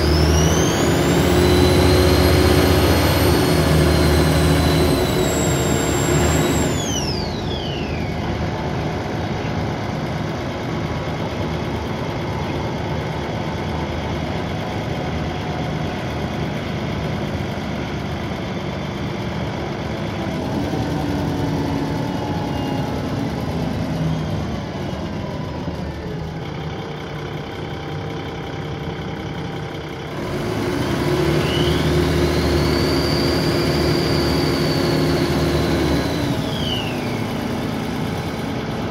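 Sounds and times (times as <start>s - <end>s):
turbo whine: 0.0s - 16.0s, 29.3s - 38.9s
bus diesel engine: 0.0s - 38.9s.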